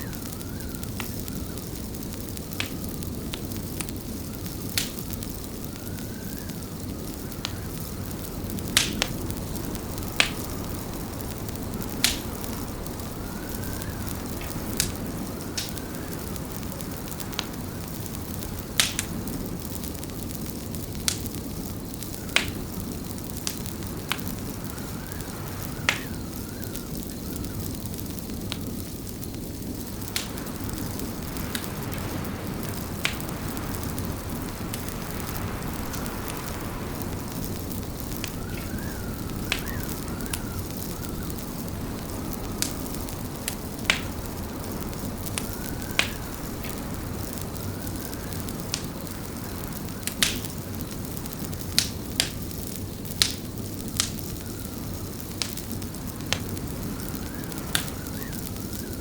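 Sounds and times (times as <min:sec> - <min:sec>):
faint wavering whistle: 0:00.0 - 0:01.7, 0:37.7 - 0:43.0
wood fire crackling and popping: 0:00.0 - 0:59.0.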